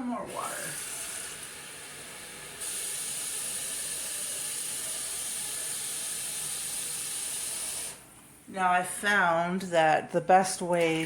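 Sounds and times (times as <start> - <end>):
water running from tap: 0.2 - 8.0.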